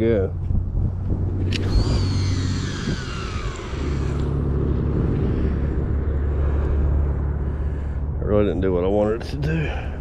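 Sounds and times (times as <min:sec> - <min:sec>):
steady low rumble: 0:00.0 - 0:10.0
fishing reel spool whine: 0:01.4 - 0:05.7.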